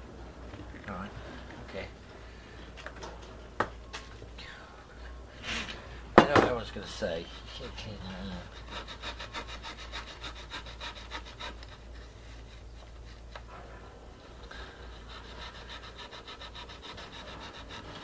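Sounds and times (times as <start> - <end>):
hand tool rasping strokes: 14.9 - 18.0.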